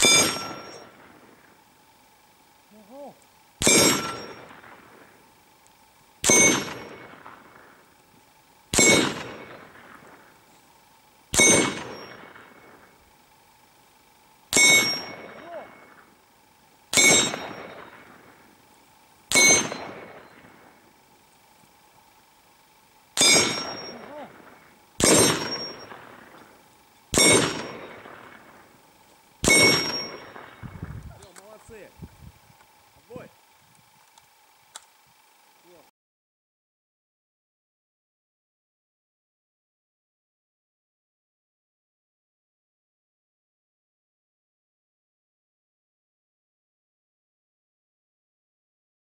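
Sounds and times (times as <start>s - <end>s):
bullets striking steel gong: 0.0s - 0.9s, 3.6s - 4.7s, 6.2s - 7.4s, 8.8s - 9.7s, 11.4s - 12.6s, 14.5s - 16.0s, 16.9s - 18.1s, 19.3s - 20.3s, 23.2s - 26.1s, 27.1s - 28.4s, 29.4s - 30.6s
rifle shots: 0.0s - 1.2s, 3.6s - 5.1s, 6.2s - 7.8s, 8.7s - 10.3s, 11.3s - 12.8s, 14.5s - 16.0s, 16.9s - 18.4s, 19.3s - 20.7s, 23.2s - 28.8s, 29.4s - 31.8s
steel gong clanging: 14.6s - 15.5s.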